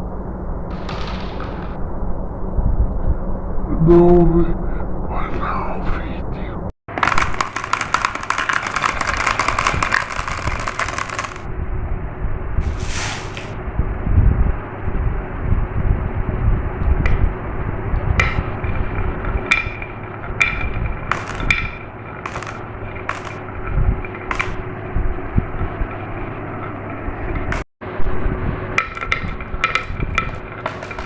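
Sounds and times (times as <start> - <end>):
marbles clicking: 6.9 - 11.5, 19.5 - 23.4, 24.2 - 24.6, 28.8 - 31.0
marbles rolling on a track: 6.9 - 11.5, 19.3 - 24.7, 28.8 - 31.0.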